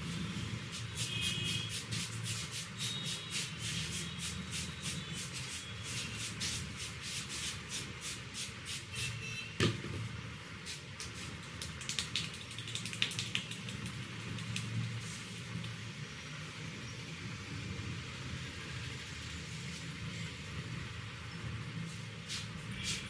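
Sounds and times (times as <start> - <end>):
hands rubbing hair and scalp: 10.7 - 15.4.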